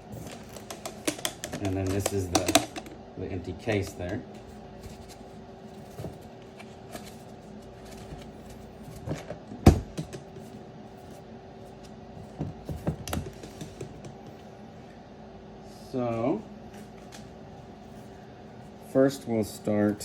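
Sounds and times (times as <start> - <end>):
steady low hum: 0.0 - 20.0
boxes tapped and knocked on table: 9.1 - 10.5, 12.3 - 14.3.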